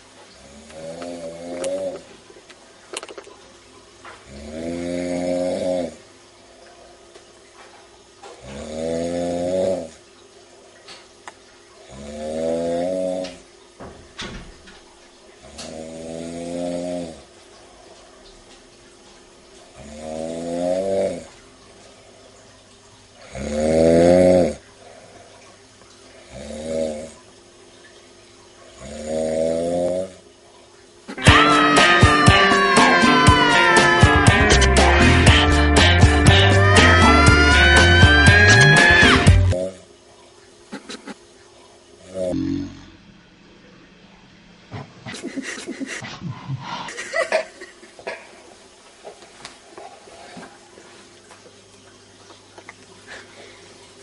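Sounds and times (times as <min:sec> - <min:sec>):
heavy snoring: 0:00.4 - 0:02.1, 0:04.2 - 0:06.0, 0:08.4 - 0:10.0, 0:11.9 - 0:13.4, 0:15.4 - 0:17.3, 0:19.8 - 0:21.3, 0:23.2 - 0:24.6, 0:26.2 - 0:27.2, 0:28.8 - 0:30.2, 0:42.1 - 0:43.0
person laughing: 0:31.1 - 0:35.2, 0:40.7 - 0:41.2, 0:45.1 - 0:48.3.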